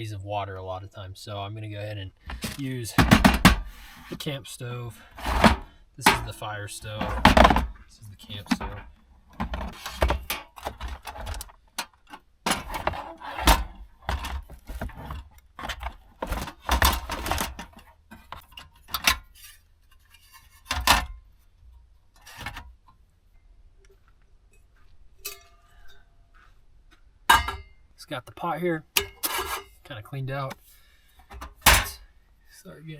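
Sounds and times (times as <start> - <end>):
clanks and rattles of cooking gear: 2.2 - 4.2, 4.9 - 23.0, 27.3 - 27.8, 29.0 - 29.9, 30.5 - 32.1.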